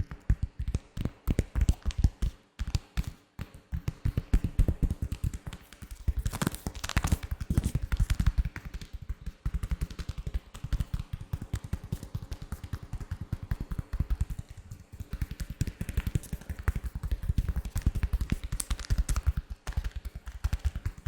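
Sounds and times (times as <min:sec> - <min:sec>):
gloved hands rubbing and tapping: 0:00.0 - 0:21.0.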